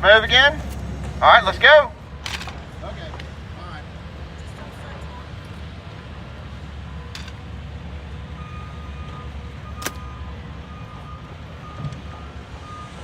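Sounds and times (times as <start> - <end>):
construction vehicle engine running: 0.0 - 13.0
reversing alarm beeping: 8.1 - 13.0.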